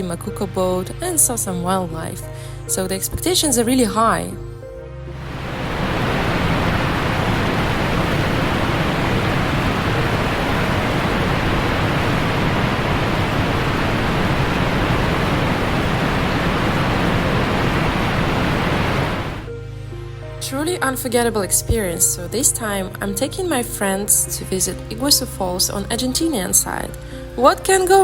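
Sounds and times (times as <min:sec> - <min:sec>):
waterfall roaring: 0:05.2 - 0:19.5.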